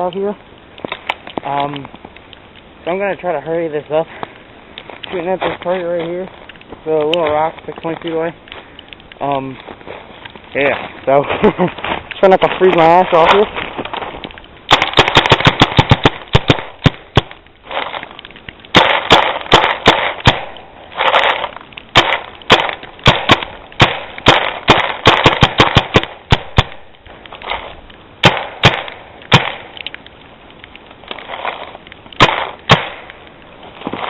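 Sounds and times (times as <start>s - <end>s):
paintball gun firing: 14.7s - 18.0s, 18.7s - 26.9s, 28.2s - 29.8s, 32.2s - 33.2s.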